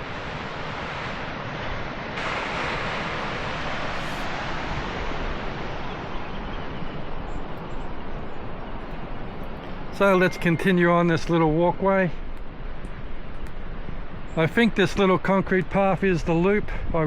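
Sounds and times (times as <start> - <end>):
waterfall rushing: 0.0 - 6.8.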